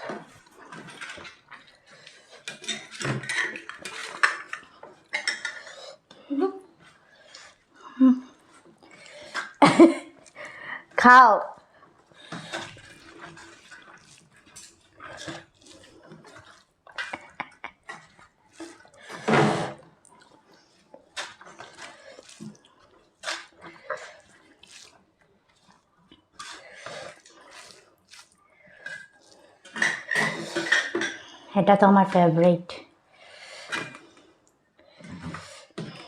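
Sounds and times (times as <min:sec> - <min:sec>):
wet chewing sounds: 0:00.0 - 0:11.0, 0:11.6 - 0:31.4
dishes clinking: 0:02.5 - 0:05.7, 0:29.7 - 0:31.2.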